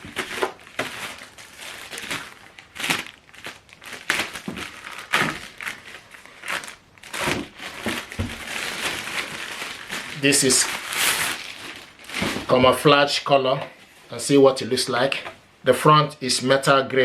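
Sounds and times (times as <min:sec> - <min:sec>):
paper packaging crinkling: 0:00.0 - 0:12.8.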